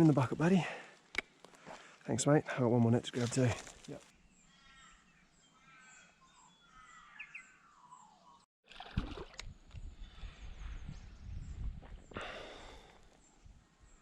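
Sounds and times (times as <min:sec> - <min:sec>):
birds chirping and whistling: 0:04.3 - 0:08.4.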